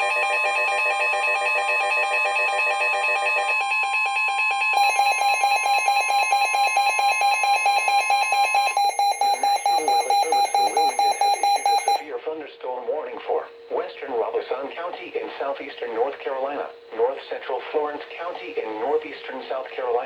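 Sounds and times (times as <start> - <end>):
rapid alert beeping: 4.8 - 12.1
steady warning tone: 4.8 - 12.2.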